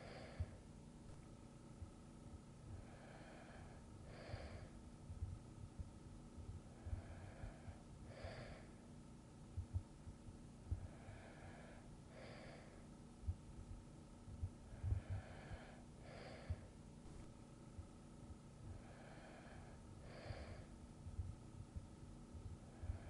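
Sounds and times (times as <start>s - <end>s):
person breathing softly: 0.0s - 1.3s, 2.6s - 5.4s, 6.4s - 8.9s, 10.6s - 13.4s, 14.4s - 17.4s, 18.6s - 21.3s, 22.3s - 23.0s
faint low thuds: 4.4s - 7.6s, 13.2s - 15.7s, 20.4s - 23.0s.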